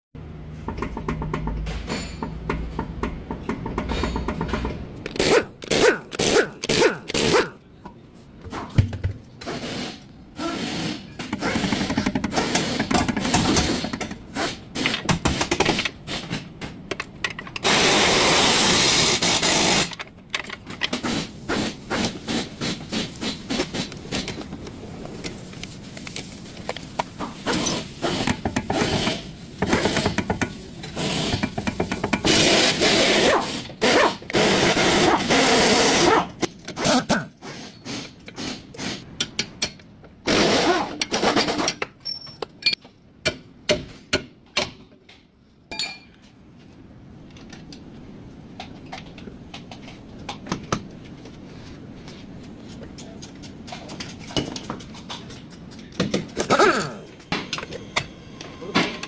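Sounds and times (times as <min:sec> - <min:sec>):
sharp metallic clicks and knocks: 0:00.6 - 0:07.2.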